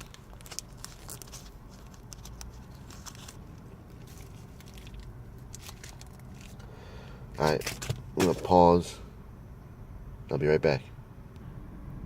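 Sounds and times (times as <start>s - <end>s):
wrapper crinkling: 0.0s - 6.7s.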